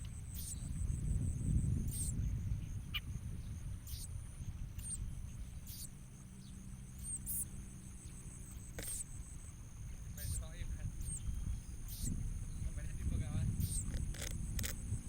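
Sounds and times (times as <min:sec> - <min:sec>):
high-pitched insect drone: 0:00.2 - 0:02.3
high bird chirps: 0:10.2 - 0:12.7.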